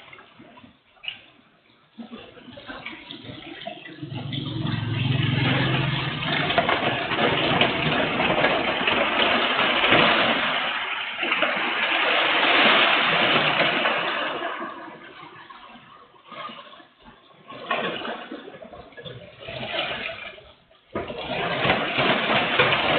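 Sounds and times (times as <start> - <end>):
low hum: 3.9 - 7.9
heavy rain: 4.1 - 10.5.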